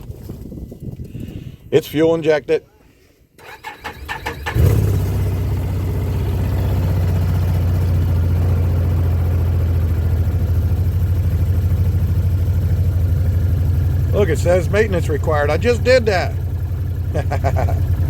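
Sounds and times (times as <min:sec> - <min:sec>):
engine cranking and idling: 0:03.4 - 0:18.0.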